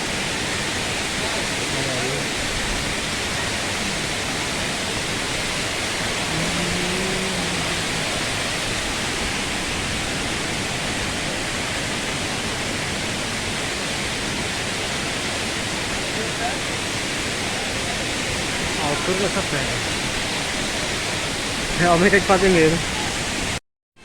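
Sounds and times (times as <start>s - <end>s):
waterfall rushing: 0.0s - 23.6s.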